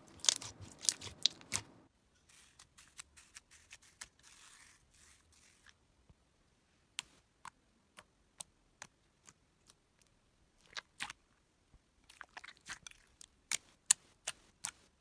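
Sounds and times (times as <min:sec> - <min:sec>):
slime clicking and popping: 0:00.1 - 0:01.7.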